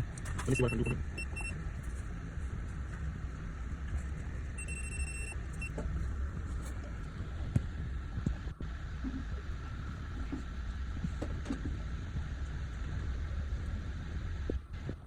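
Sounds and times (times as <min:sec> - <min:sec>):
high electronic beep: 0:00.5 - 0:01.6, 0:04.6 - 0:05.7.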